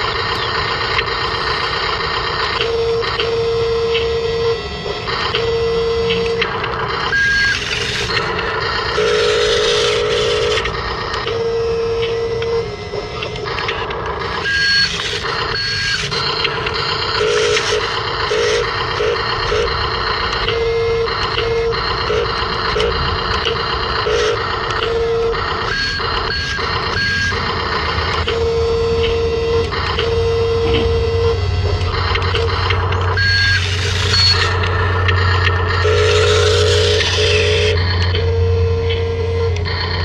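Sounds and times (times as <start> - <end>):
electronic beeping tones: 0.0 - 40.0
noisy whir: 0.0 - 40.0
low hum: 27.3 - 35.6.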